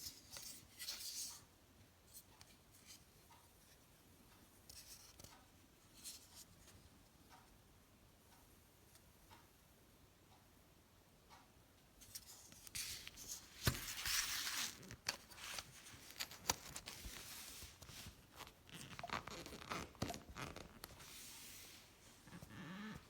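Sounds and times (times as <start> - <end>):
rustling and scraping: 12.0 - 23.0.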